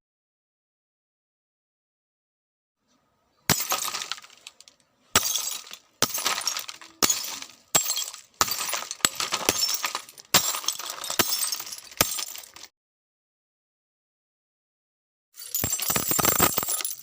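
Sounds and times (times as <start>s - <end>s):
glass smashing: 3.5s - 12.7s, 15.4s - 17.0s
tinkling glass shards: 15.4s - 17.0s.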